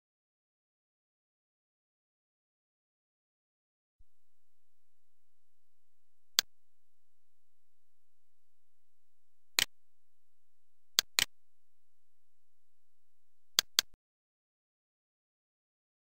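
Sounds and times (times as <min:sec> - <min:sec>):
computer mouse clicks: 0:04.1 - 0:06.7, 0:09.4 - 0:09.8, 0:10.9 - 0:11.4, 0:13.5 - 0:14.0.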